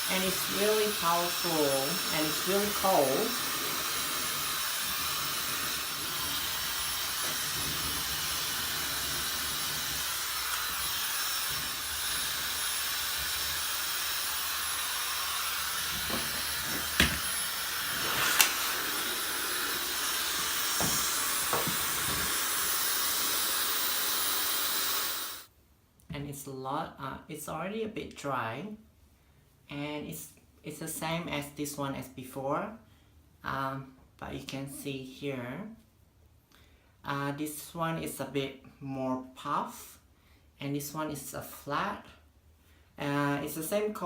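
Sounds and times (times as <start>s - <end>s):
hair dryer running: 0.0s - 25.5s.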